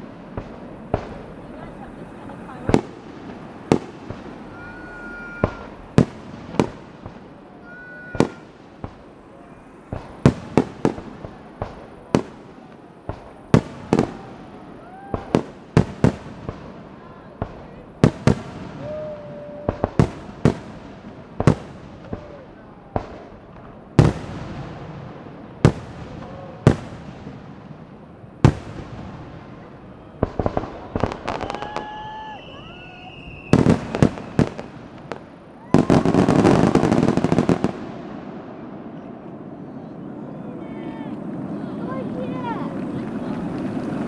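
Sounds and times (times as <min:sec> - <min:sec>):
firework shells booming: 0:00.0 - 0:39.4
firework crackling salvo: 0:00.0 - 0:44.0.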